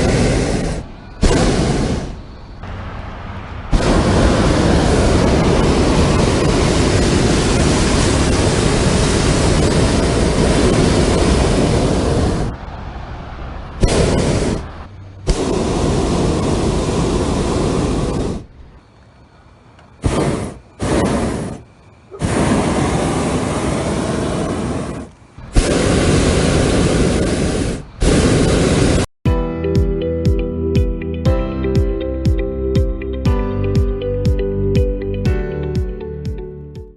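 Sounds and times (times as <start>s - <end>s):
propane burner blast: 0.0s - 18.6s, 20.0s - 29.1s
guitar music: 29.3s - 36.9s.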